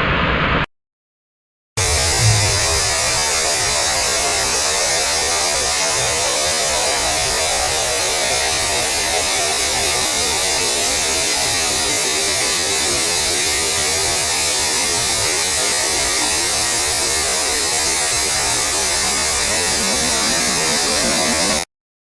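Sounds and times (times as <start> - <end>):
rough buzzing undertone: 1.8 - 3.6.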